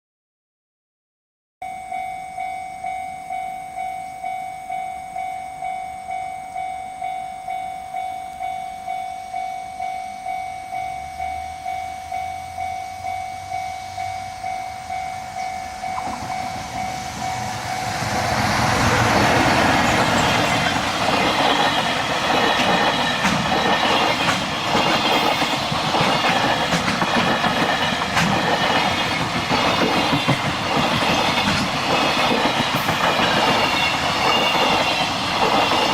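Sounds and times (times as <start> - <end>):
level-crossing bell clanging: 1.6 - 35.9
freight train passing: 2.8 - 35.9
wagons clattering over rail joints: 18.9 - 35.9.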